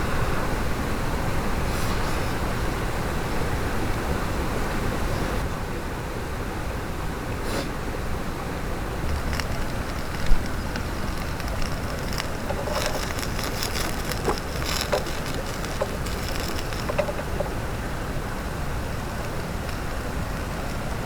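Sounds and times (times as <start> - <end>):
clicks and crackles: 9.0 - 17.6, 18.9 - 21.0.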